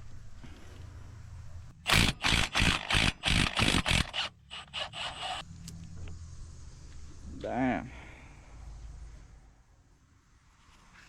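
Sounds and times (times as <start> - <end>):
steady low hum: 0.0 - 10.5
wrench scraping on rusted bolt: 1.9 - 5.4.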